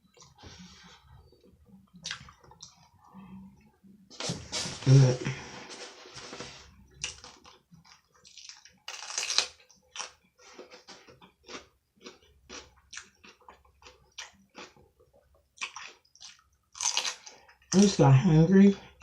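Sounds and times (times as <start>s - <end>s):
person chewing food: 0.0s - 3.8s, 6.9s - 17.7s.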